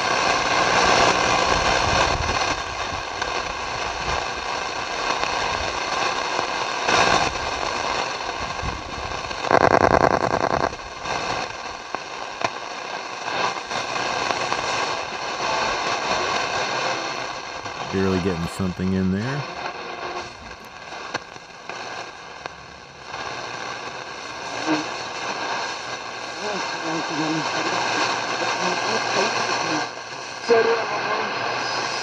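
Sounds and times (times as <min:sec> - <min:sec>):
shortwave radio static: 0:17.7 - 0:19.6
rapidly pulsing radio signal: 0:17.8 - 0:19.5.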